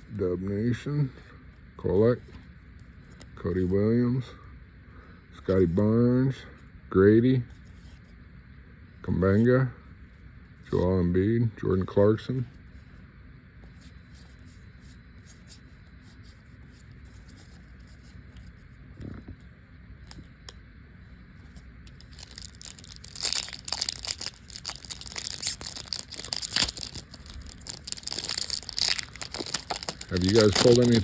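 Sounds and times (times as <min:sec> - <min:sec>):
light handling ticks: 0:21.8 - 0:31.0
wrapper crinkling and tearing: 0:21.9 - 0:31.0.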